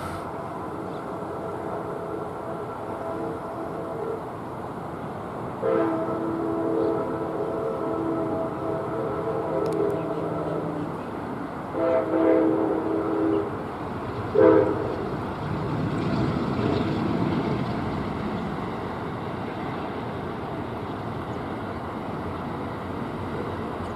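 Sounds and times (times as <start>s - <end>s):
train passing rumble: 0.0s - 23.9s
train air horn blasts: 5.6s - 11.0s, 11.7s - 13.6s, 14.3s - 15.0s.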